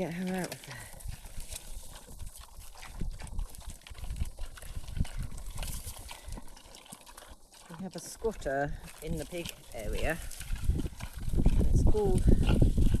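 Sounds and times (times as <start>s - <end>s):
squelching footsteps in mud: 0.0s - 13.0s
wind buffeting microphone: 0.9s - 6.4s, 8.4s - 13.0s.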